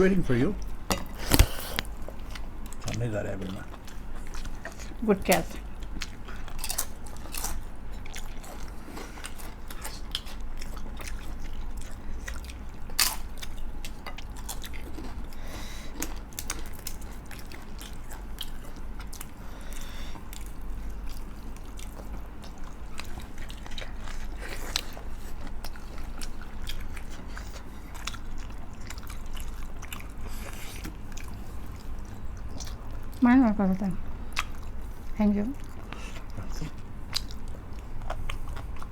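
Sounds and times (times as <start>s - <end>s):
chewing and biting: 0.6s - 33.4s, 34.0s - 38.9s.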